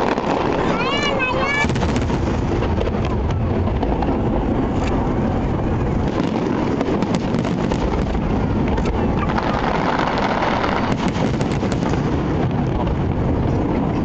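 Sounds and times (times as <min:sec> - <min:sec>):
fireworks rumble pops and crackles: 0:00.0 - 0:14.0.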